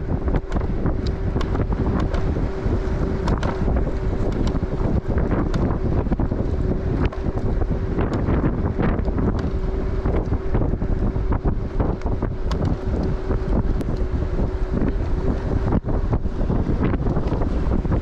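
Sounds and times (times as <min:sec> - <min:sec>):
electric scooter motor hum: 0:00.0 - 0:18.0
wind buffeting microphone: 0:00.0 - 0:18.0
small clicks and rattles: 0:03.2 - 0:05.8.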